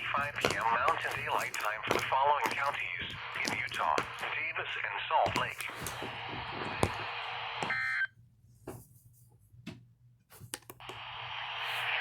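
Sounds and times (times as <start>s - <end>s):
radio static hiss: 0.0s - 8.1s, 10.8s - 12.0s.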